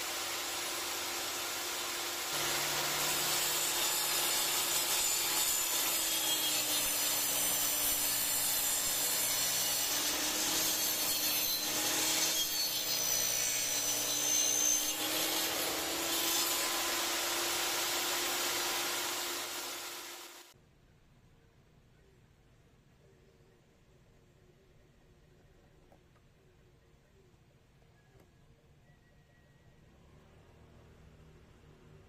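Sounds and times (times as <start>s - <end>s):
power tool cutting wood: 0.0s - 20.6s.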